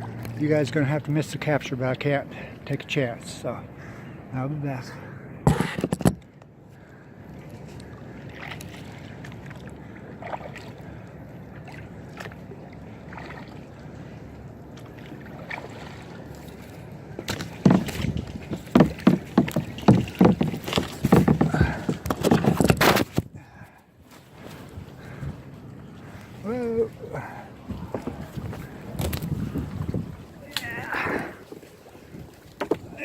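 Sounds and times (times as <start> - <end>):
water lapping around boat: 0.0 - 33.0
knocks and thumps against boat: 5.4 - 6.9, 14.8 - 23.8, 27.1 - 33.0.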